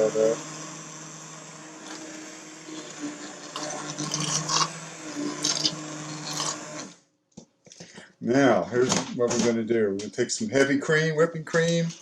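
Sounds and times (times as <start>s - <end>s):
immersion blender motor hum: 0.0s - 7.0s.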